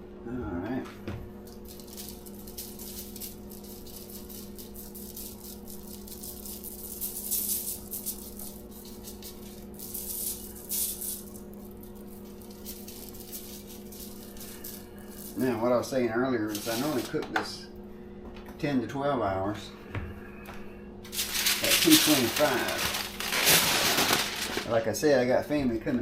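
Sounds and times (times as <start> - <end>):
steady low hum: 0.0 - 26.0
spice shaker rattling: 1.5 - 15.5, 21.1 - 24.7.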